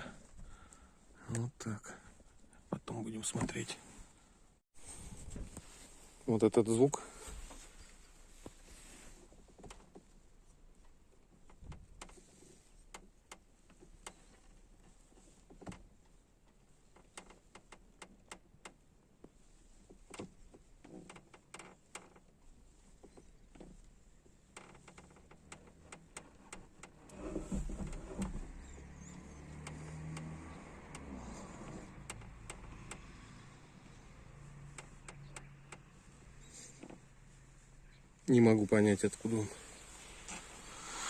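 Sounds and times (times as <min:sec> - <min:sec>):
car pillar creaks and clicks: 0:10.8 - 0:37.1.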